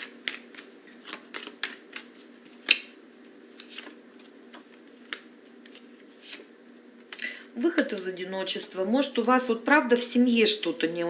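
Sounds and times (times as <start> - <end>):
cards clicking and tapping: 0.0 - 3.0
faint steady hum: 0.0 - 11.0.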